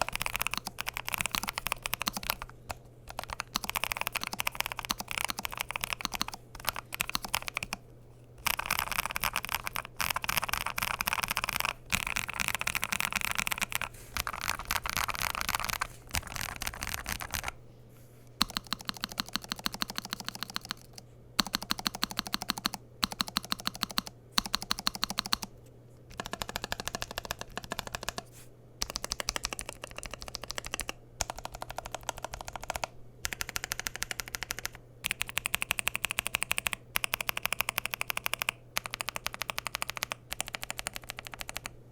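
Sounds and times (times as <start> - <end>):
fast typing on mechanical keyboard: 0.0 - 7.8, 8.4 - 17.6, 18.4 - 25.5, 26.1 - 41.8.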